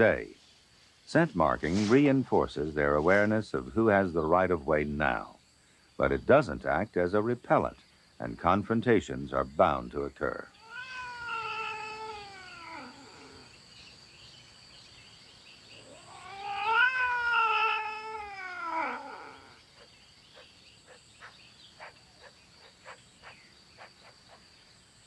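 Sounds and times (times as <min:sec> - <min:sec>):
cats yowling: 0:10.6 - 0:13.5, 0:15.8 - 0:19.6.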